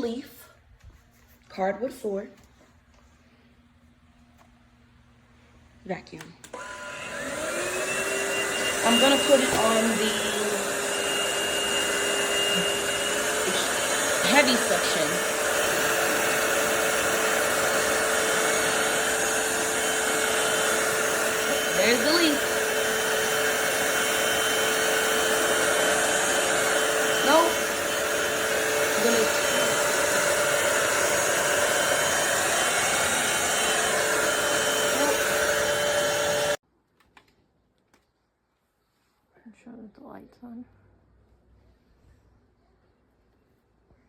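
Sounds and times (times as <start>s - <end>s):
vacuum cleaner running: 6.4s - 36.6s.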